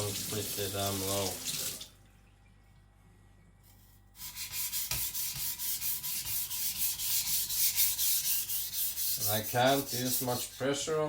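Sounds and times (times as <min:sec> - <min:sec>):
blade rubbing on whetstone: 0:04.2 - 0:10.9.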